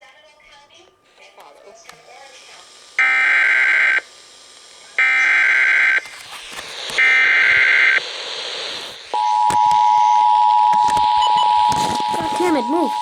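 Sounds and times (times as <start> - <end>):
buzzy digital data tones: 2.4 - 6.0, 6.9 - 9.5.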